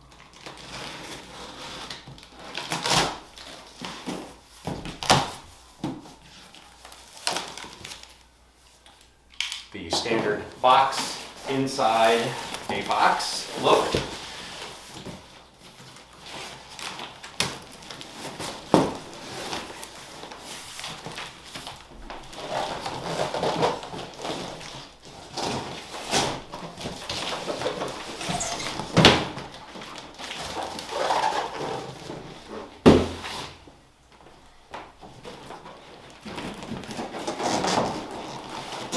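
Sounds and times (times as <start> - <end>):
cardboard rustling and scraping: 0.3 - 8.2, 9.8 - 38.9
knocks and thumps on boxes: 32.8 - 33.4.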